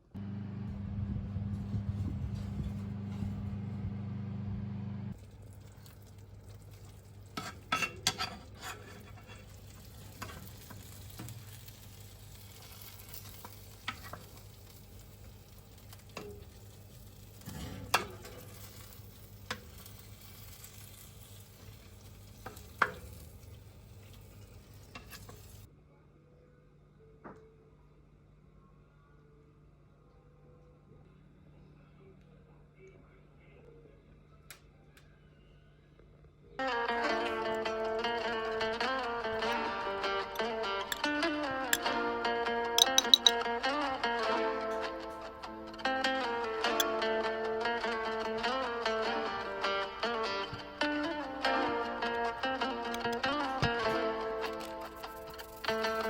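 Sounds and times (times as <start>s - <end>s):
loud steady hum: 0.0s - 5.1s
food sizzling in a frying pan: 5.1s - 25.7s, 53.6s - 56.0s
utensil clinking on pan: 7.3s - 9.5s, 42.8s - 43.4s.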